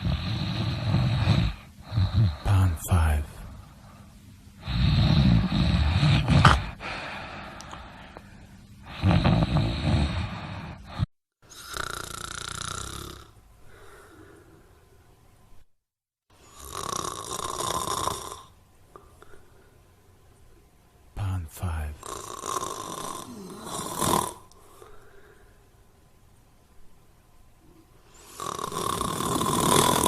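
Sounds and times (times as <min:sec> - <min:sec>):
person snoring: 0:00.0 - 0:03.5, 0:04.6 - 0:08.2, 0:08.8 - 0:14.4, 0:16.4 - 0:18.6, 0:21.2 - 0:25.0, 0:28.1 - 0:30.0.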